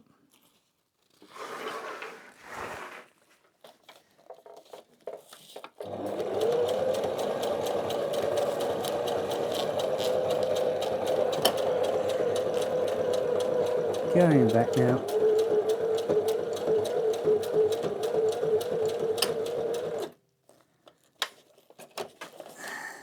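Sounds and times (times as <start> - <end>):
electric sewing machine stitching: 5.8 - 20.2.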